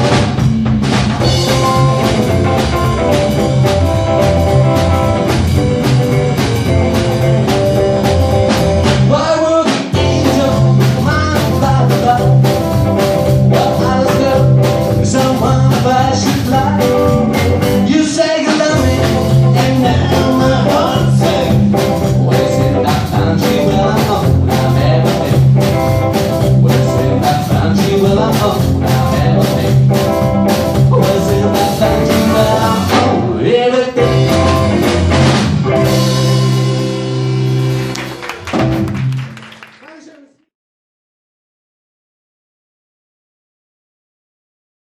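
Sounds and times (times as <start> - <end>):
rockabilly band playing: 0.0 - 40.1.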